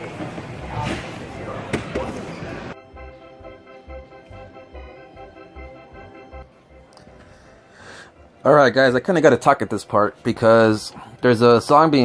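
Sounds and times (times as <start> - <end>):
song with steady low beat: 2.7 - 8.4.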